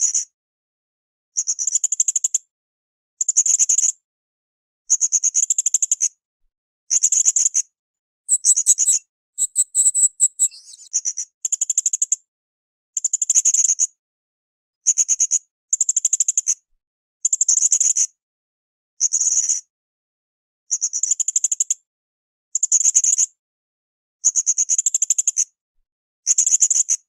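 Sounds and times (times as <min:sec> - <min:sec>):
parrot high-pitched chips: 0:08.3 - 0:10.9.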